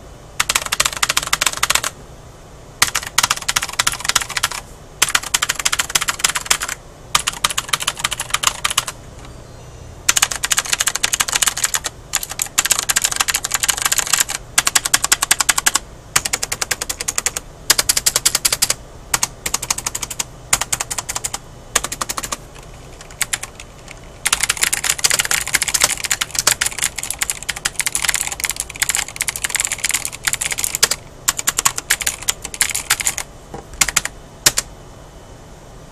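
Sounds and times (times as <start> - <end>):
mechanical keyboard typing: 0.4 - 2.0, 2.8 - 9.0, 10.1 - 34.7.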